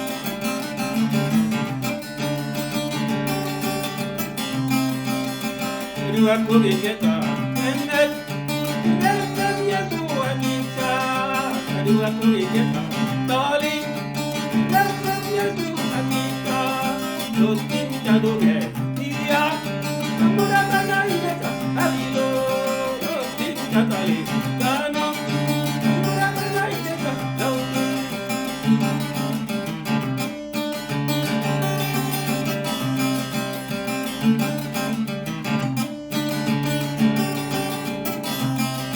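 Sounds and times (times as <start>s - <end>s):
strummed acoustic guitar: 0.0s - 38.9s
person singing: 5.9s - 29.2s.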